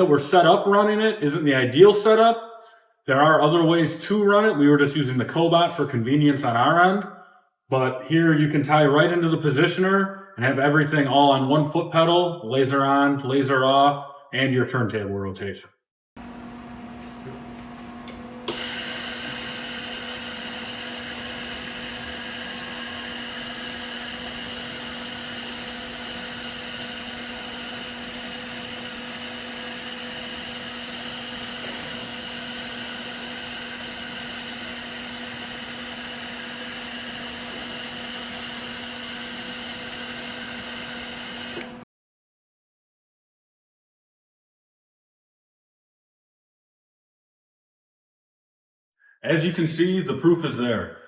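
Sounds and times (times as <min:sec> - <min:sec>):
laser welder whine with hiss: 0:18.5 - 0:41.8.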